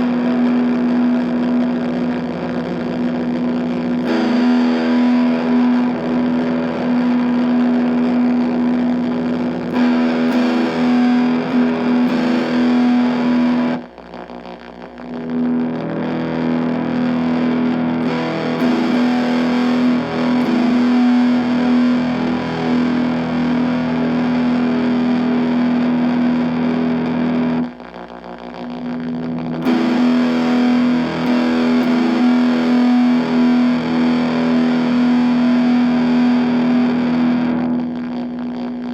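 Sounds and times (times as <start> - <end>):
distorted electric guitar: 0.0 - 38.9.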